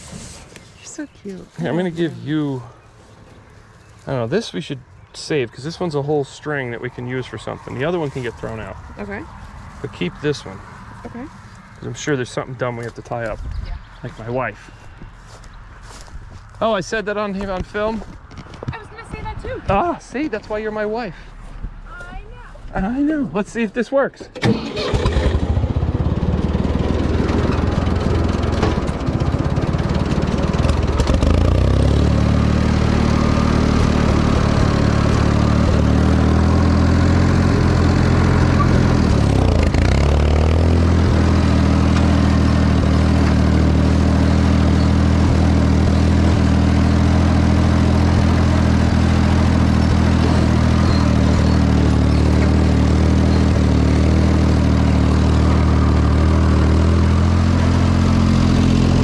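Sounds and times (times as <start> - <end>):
tractor engine running: 24.2 - 59.0.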